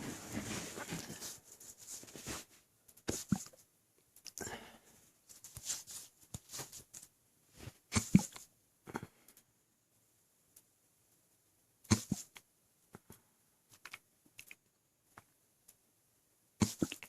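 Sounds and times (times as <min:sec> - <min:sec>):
mouth clicks and gulps: 0:07.9 - 0:09.1, 0:11.9 - 0:13.2, 0:16.6 - 0:17.0.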